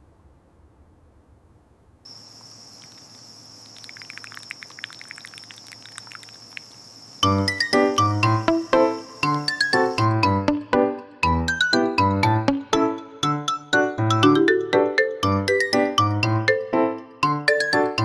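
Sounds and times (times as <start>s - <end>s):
faint low hum: 0.0s - 7.1s
insect drone with chirping: 2.0s - 10.5s.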